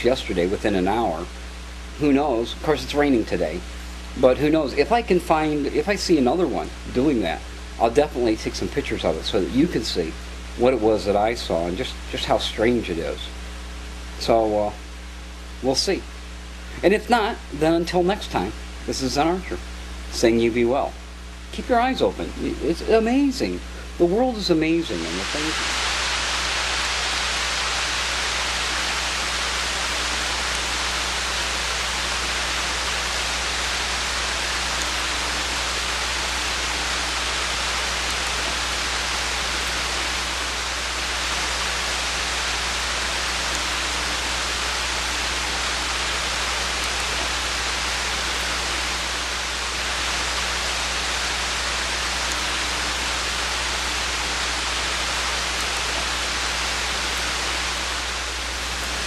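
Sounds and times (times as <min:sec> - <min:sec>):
rain falling: 0:22.1 - 0:59.0.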